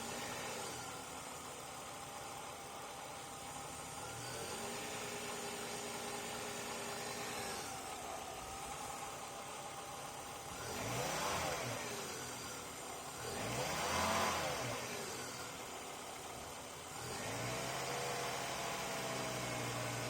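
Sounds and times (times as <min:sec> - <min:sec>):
car engine revving: 0:10.4 - 0:15.8, 0:16.8 - 0:20.0.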